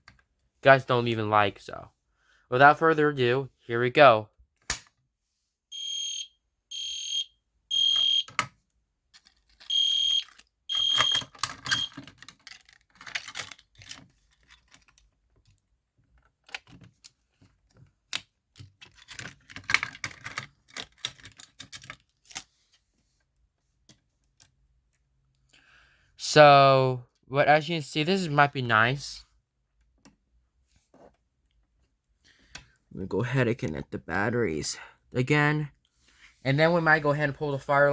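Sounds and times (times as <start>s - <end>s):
fire alarm horn blasts: 5.7s - 8.3s, 9.7s - 11.9s
small clicks and rattles: 9.1s - 22.5s.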